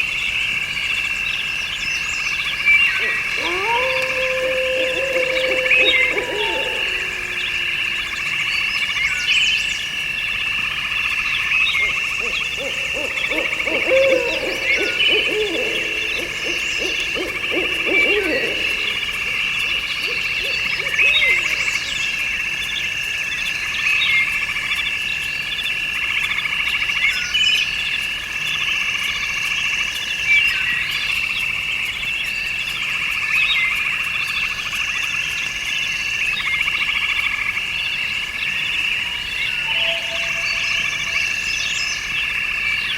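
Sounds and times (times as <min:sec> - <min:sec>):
insects and frogs trilling: 0:00.0 - 0:42.9
low repeated calls: 0:01.0 - 0:25.0, 0:26.5 - 0:42.9
bird chirps: 0:37.8 - 0:42.9.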